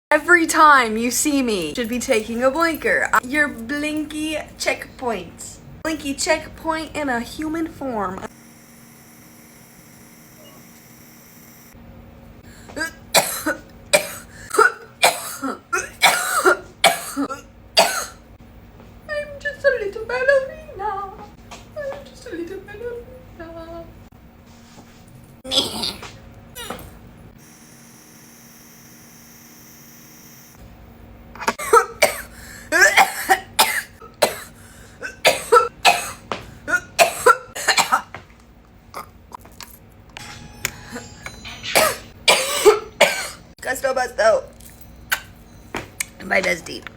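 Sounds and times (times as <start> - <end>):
person coughing hard: 12.8 - 18.2, 25.5 - 26.8, 31.5 - 38.2, 41.8 - 43.4.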